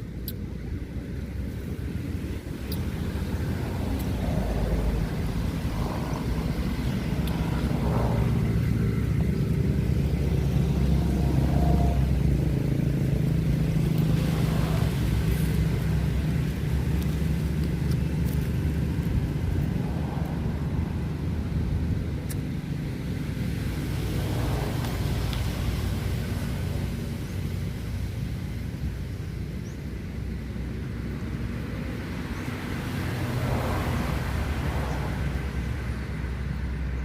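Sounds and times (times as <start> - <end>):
low rumble: 0.0 - 29.2.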